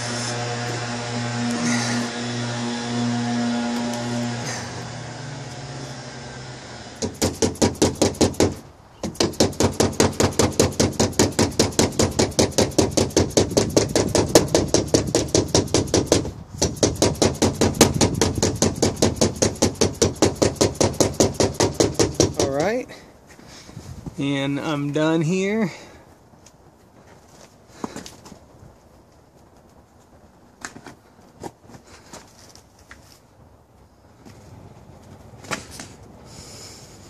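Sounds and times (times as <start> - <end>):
steady low hum: 0.0 - 7.9
hammer tapping on sheet metal: 7.0 - 22.7.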